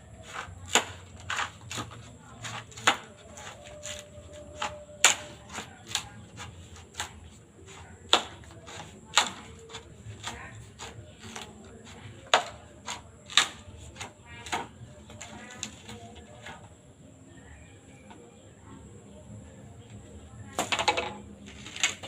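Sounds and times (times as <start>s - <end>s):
bamboo splitting cracks: 0.2s - 7.2s, 8.1s - 11.5s, 12.3s - 16.0s, 20.6s - 22.0s.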